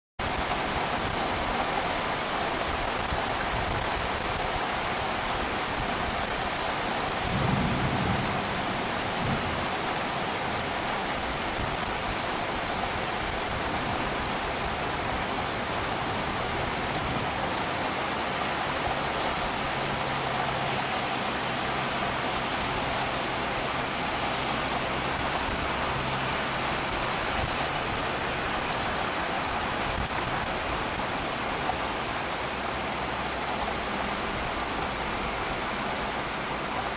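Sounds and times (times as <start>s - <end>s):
heavy rain falling: 0.2s - 36.9s
thunder rumble: 7.1s - 10.9s.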